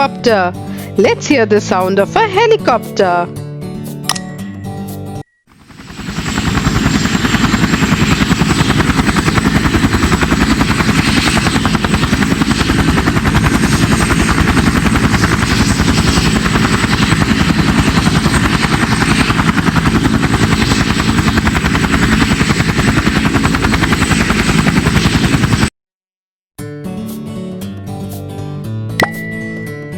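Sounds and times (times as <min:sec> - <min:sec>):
helicopter rotor chopping: 0:05.5 - 0:25.7.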